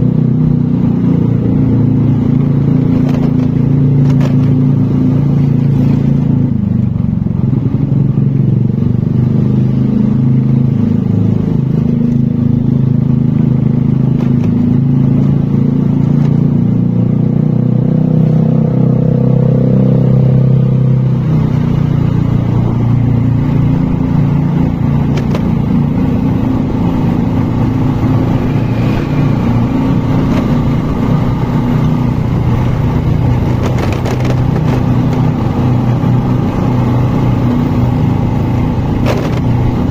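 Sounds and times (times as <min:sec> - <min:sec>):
vehicle engine running: 0:20.2 - 0:39.9.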